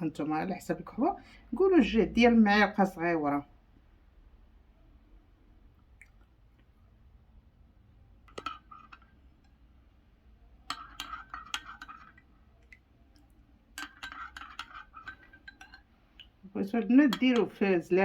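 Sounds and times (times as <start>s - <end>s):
metal spoon clinking against dish: 10.7s - 12.2s, 13.8s - 15.9s, 17.1s - 17.6s.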